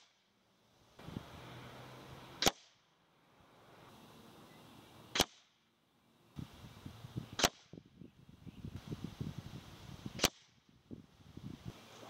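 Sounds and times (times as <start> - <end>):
air rifle shots: 2.4 - 2.8, 5.1 - 5.6, 7.3 - 7.9, 10.1 - 10.6.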